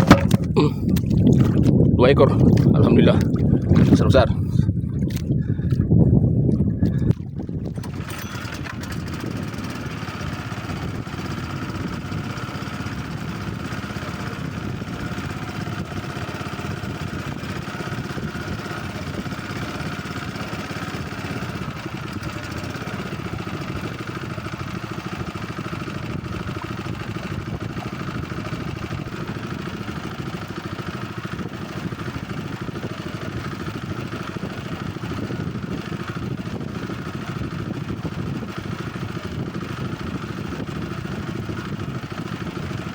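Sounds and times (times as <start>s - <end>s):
boat engine running: 0.0s - 42.9s.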